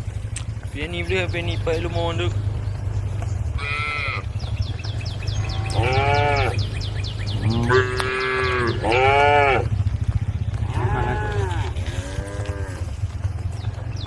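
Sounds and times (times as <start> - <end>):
steady low hum: 0.0 - 14.0
cattle mooing: 3.5 - 4.4, 5.2 - 9.8, 10.5 - 13.1.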